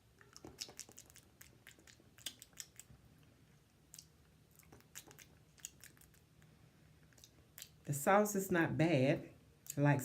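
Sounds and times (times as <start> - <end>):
lip smacks and mouth clicks: 0.1 - 7.8.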